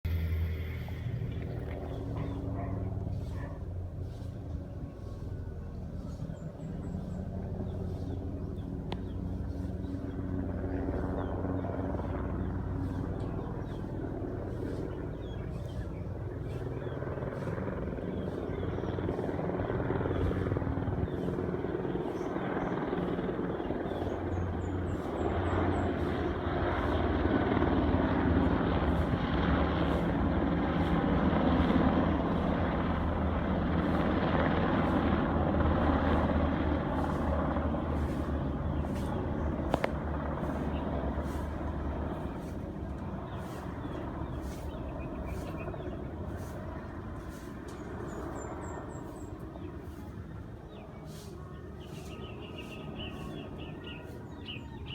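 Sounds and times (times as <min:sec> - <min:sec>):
helicopters passing low: 0:00.0 - 0:54.9.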